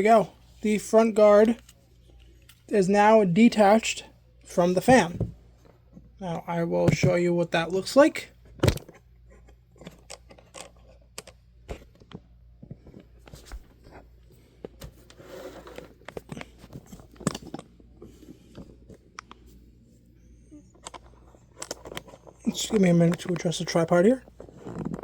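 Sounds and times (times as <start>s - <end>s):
objects being picked up and moved: 8.6s - 19.7s, 20.6s - 25.0s.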